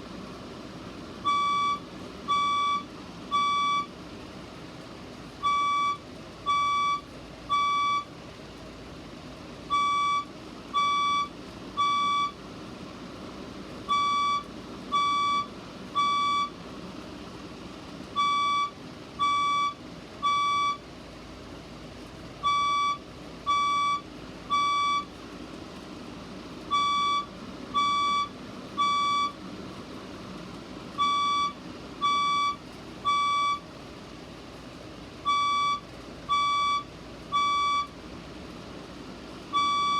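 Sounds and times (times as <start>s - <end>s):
fire alarm beeping: 1.2s - 3.9s, 5.4s - 8.1s, 9.7s - 12.4s, 13.9s - 16.6s, 18.2s - 20.8s, 22.4s - 25.1s, 26.7s - 29.4s, 31.0s - 33.6s, 35.2s - 37.9s, 39.5s - 39.9s.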